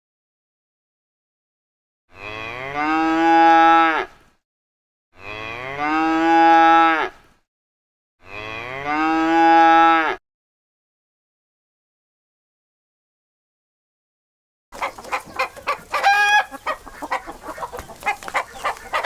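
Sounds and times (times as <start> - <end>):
cow mooing: 2.1 - 4.2, 5.2 - 7.2, 8.2 - 10.2.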